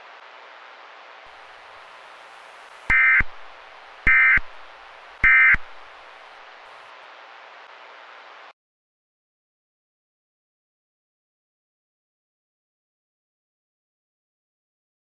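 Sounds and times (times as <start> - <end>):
radio static hiss: 0.0 - 8.5.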